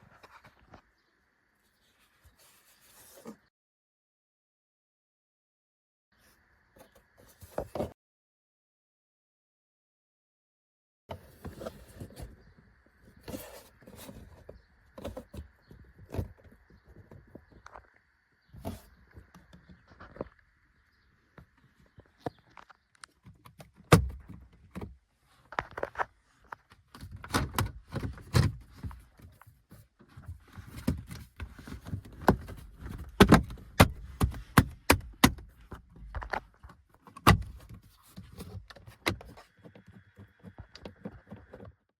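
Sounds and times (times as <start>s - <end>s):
clicks and knocks in car cabin: 26.8s - 41.8s.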